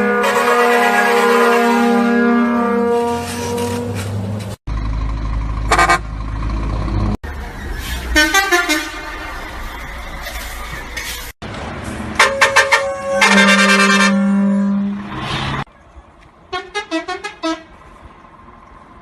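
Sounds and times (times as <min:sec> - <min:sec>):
multi-tone horn playing notes: 0:00.0 - 0:04.0, 0:12.2 - 0:15.1
vehicle horn blast: 0:00.0 - 0:04.0, 0:05.7 - 0:06.1, 0:08.2 - 0:09.2, 0:12.2 - 0:15.1, 0:16.5 - 0:17.7
quick horn toots: 0:00.0 - 0:04.2, 0:07.8 - 0:09.3, 0:12.2 - 0:15.6.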